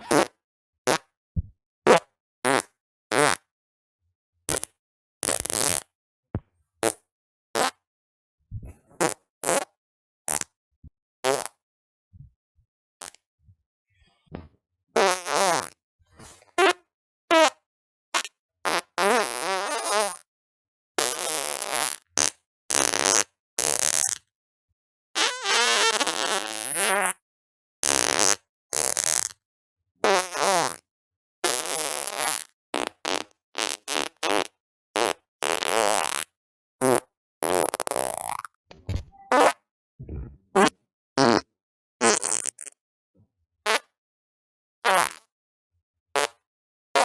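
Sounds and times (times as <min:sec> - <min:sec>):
farts: 0:00.0 - 0:01.1, 0:01.9 - 0:03.5, 0:04.5 - 0:05.9, 0:07.6 - 0:07.8, 0:09.0 - 0:10.5, 0:11.2 - 0:11.6, 0:14.2 - 0:17.5, 0:18.2 - 0:20.2, 0:21.0 - 0:24.2, 0:25.2 - 0:27.2, 0:27.8 - 0:29.4, 0:30.0 - 0:30.8, 0:31.4 - 0:42.8, 0:43.7 - 0:43.9, 0:44.9 - 0:45.3, 0:46.2 - 0:46.4.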